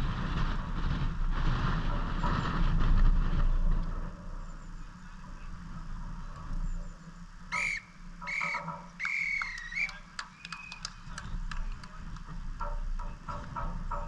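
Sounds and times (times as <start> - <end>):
voices: 4.4 - 14.0
referee's whistle blasts: 7.5 - 10.9
scattered clicks: 8.2 - 14.0.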